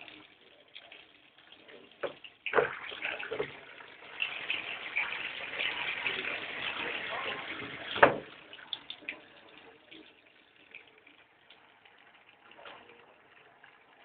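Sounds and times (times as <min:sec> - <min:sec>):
washing machine water sloshing: 0:01.5 - 0:10.8.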